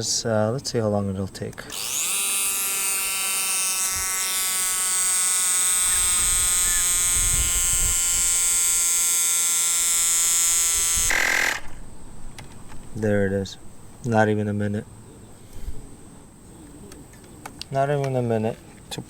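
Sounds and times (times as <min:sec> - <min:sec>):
electric compressor whining: 0:01.7 - 0:12.1.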